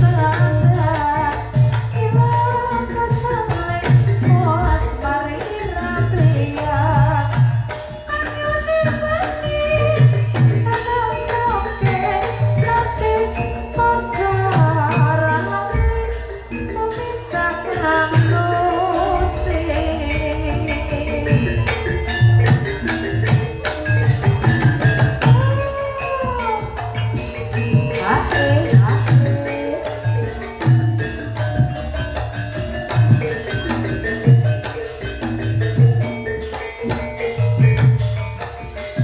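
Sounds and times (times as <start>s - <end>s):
wavering vocal melody: 0.0s - 31.5s
ringing pitched percussion: 0.0s - 39.0s
low drum strokes: 18.9s - 25.1s.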